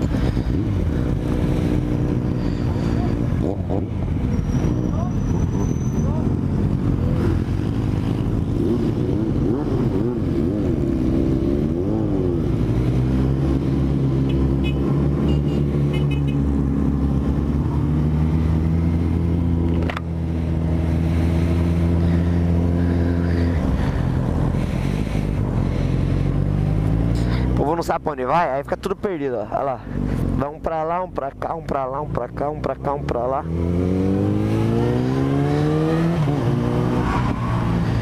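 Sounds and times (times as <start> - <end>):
sharp click: 19.7 - 20.1.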